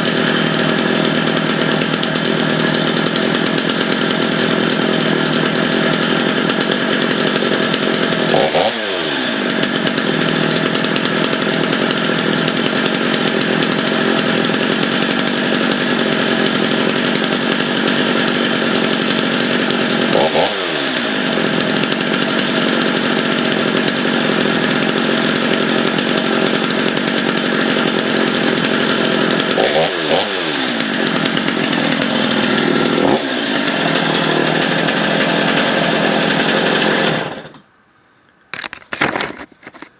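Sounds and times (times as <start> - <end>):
chainsaw idling and revving: 0.0 - 37.7.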